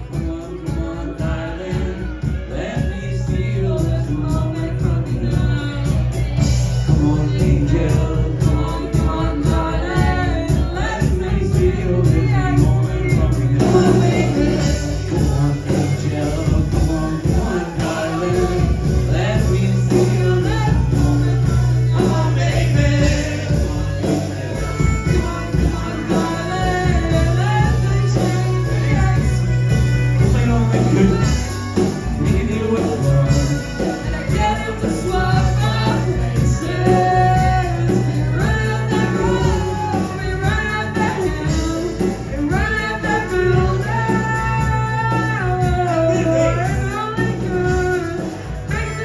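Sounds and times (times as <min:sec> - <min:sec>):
live rock band: 0:00.0 - 0:49.0
person singing: 0:00.0 - 0:49.0.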